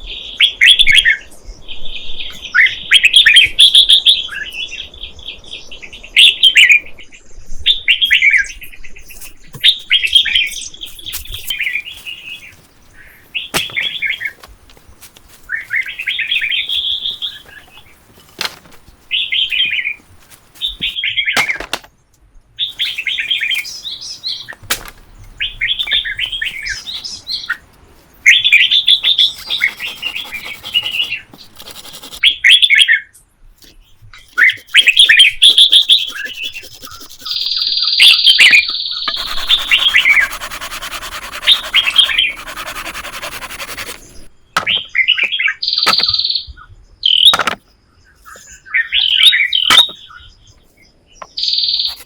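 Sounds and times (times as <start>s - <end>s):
bird chirping: 22.6s - 33.0s, 33.7s - 52.0s.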